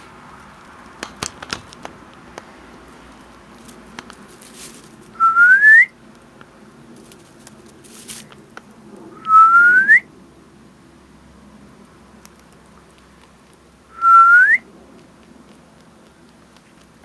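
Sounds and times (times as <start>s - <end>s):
rabbit chewing hay: 0.0s - 5.3s, 6.0s - 9.1s, 10.8s - 14.0s, 14.6s - 17.0s
person whistling rising: 5.2s - 5.9s, 9.2s - 10.0s, 14.0s - 14.6s.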